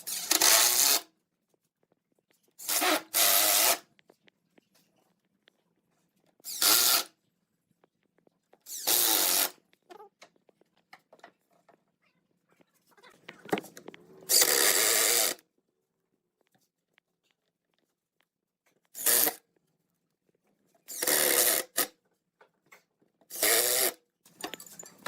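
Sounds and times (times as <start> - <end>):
power drill drilling wood: 20.9 - 21.8.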